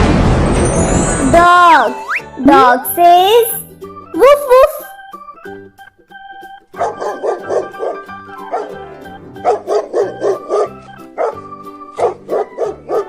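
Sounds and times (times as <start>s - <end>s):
light background music: 0.0s - 13.0s
dog barking: 6.8s - 13.0s.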